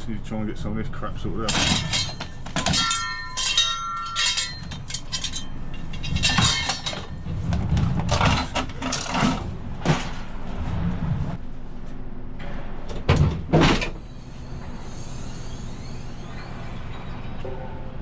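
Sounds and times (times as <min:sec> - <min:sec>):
steady low rumble: 0:00.0 - 0:18.0
scrap metal clanking: 0:01.4 - 0:10.4
ringing metal clink: 0:01.5 - 0:07.2.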